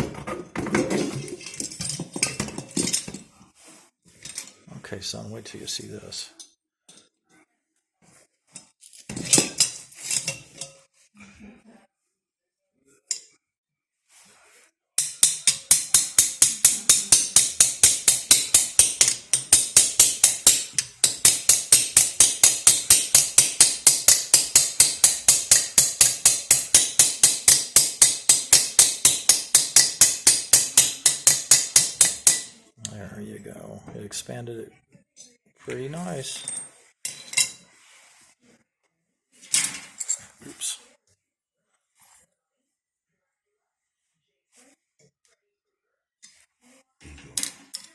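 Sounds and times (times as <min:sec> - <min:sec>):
handling knocks: 0:00.0 - 0:03.3
swaging tool clicking: 0:15.0 - 0:32.6.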